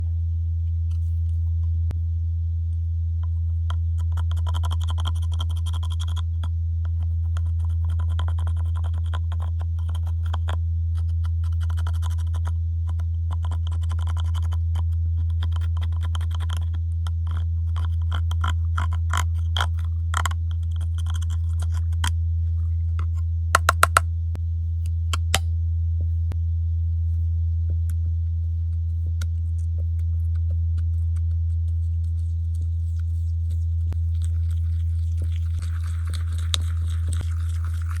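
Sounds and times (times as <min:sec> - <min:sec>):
low hum: 0:00.0 - 0:38.0
slime scraping and crackling: 0:04.0 - 0:23.2, 0:28.0 - 0:38.0
soft hissing squish: 0:29.3 - 0:38.0.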